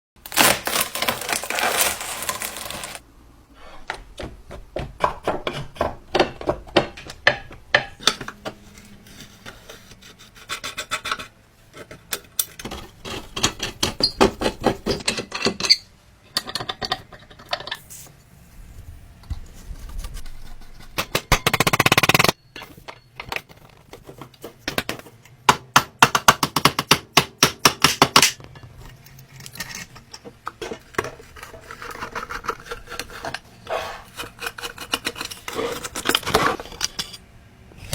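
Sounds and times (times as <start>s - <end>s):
rubbing and scraping strokes: 17.8s - 21.0s, 30.9s - 36.6s.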